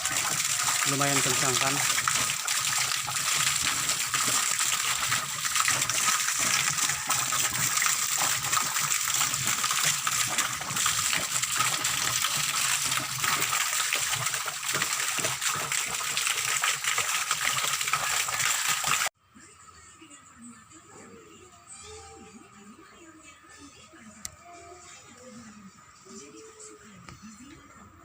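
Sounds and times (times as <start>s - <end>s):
water gushing from pipe: 0.0s - 19.1s.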